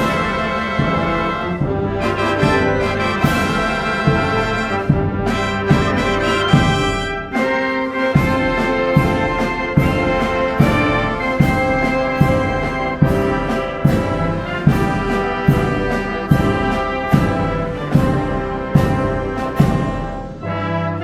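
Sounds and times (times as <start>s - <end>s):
brass band music: 0.0s - 21.0s.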